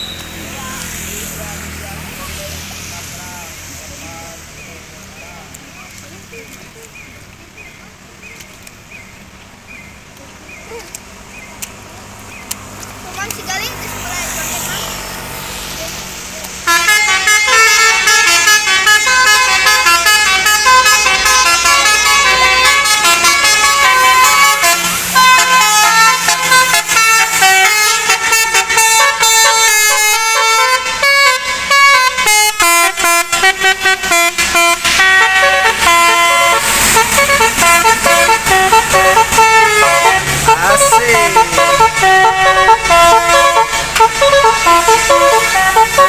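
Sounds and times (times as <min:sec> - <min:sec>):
air horn melody: 0:16.6 - 0:46.0.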